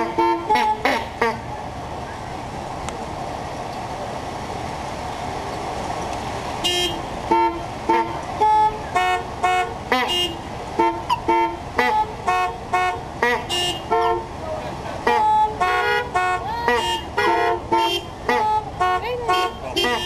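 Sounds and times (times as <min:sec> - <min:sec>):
car horns blaring short blasts: 0:00.0 - 0:01.4, 0:06.6 - 0:14.3, 0:15.0 - 0:20.0.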